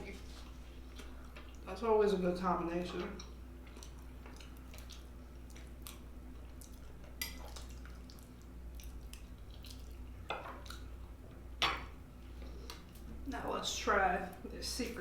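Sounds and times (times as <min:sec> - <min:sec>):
low steady hum: 0:00.0 - 0:15.0
wet chewing: 0:03.2 - 0:11.1.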